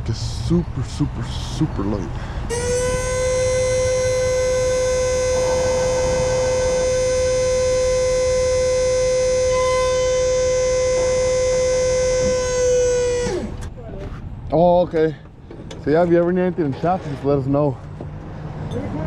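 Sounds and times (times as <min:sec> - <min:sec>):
electric winch motor whining: 0:02.4 - 0:13.8.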